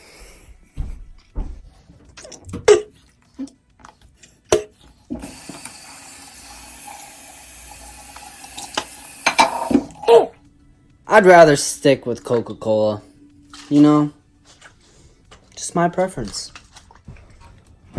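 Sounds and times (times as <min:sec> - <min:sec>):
water running: 0:05.1 - 0:10.4.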